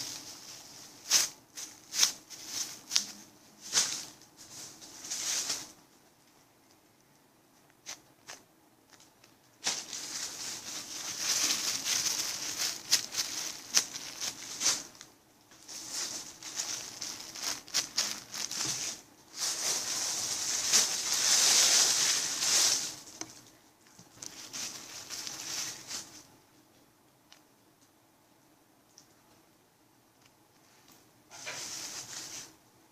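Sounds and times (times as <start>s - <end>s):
plastic packaging crinkling: 7.9s - 26.3s.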